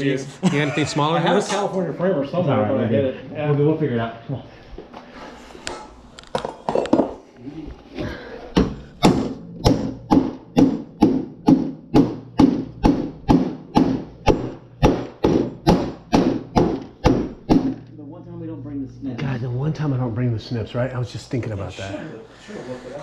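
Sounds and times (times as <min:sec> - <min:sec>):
hammer striking metal: 0:08.6 - 0:17.9.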